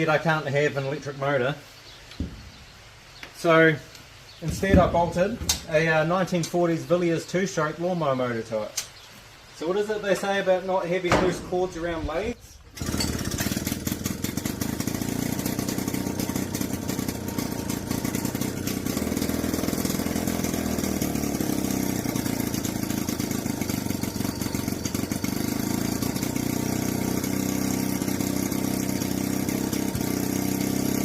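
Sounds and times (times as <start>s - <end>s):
two-stroke engine running: 12.7s - 31.0s.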